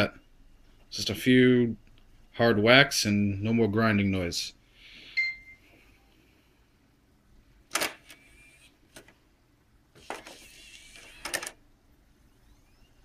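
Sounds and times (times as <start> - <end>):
disc drive whirring: 7.8 - 9.2, 9.9 - 13.0.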